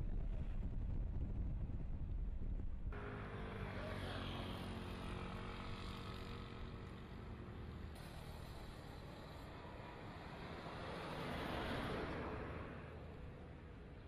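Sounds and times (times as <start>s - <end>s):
wind rumble on microphone: 0.0s - 3.0s
engine humming steadily: 0.0s - 14.0s.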